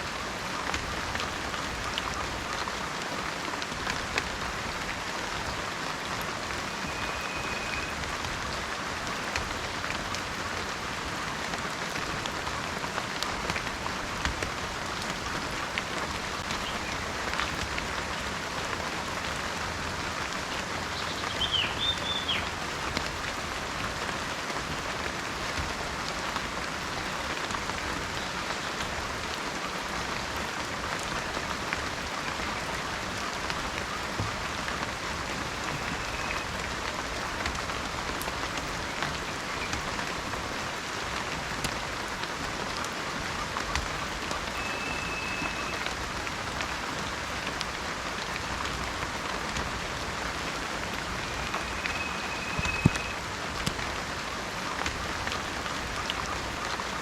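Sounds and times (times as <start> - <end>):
rain drops tapping: 0.0 - 57.0
steady rain: 0.0 - 57.0
short whistled note: 6.9 - 8.0, 51.5 - 53.2
bird chirping: 21.0 - 22.5.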